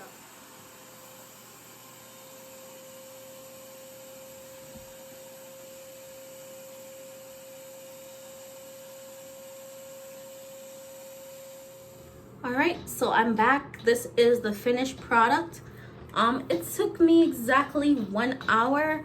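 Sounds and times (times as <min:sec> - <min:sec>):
hair dryer whine: 0:00.0 - 0:12.4.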